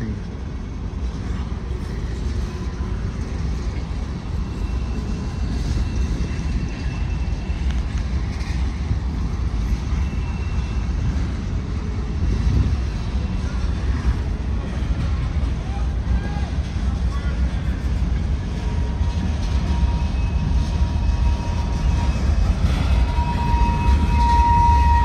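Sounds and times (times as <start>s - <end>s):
train wheels rumbling on rails: 0.0s - 25.0s
high wheel squeal: 1.8s - 11.3s, 18.4s - 25.0s.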